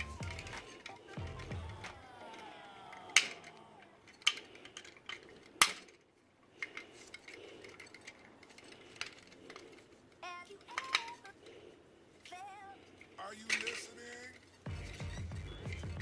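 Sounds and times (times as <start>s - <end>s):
metallic clicks and clinks: 0.0s - 11.5s.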